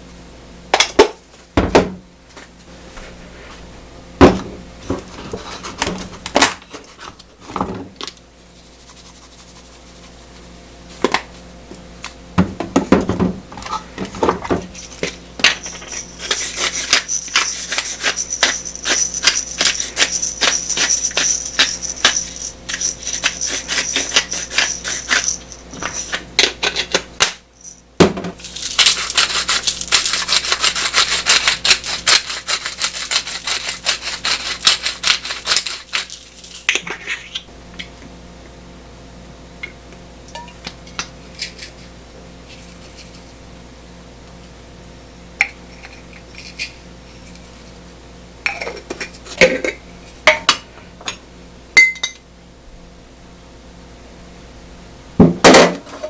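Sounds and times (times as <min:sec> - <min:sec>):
steady rubbing noise: 0:08.4 - 0:10.6
kitchen knocks and clinks: 0:12.4 - 0:17.6, 0:28.0 - 0:28.4, 0:48.5 - 0:51.2.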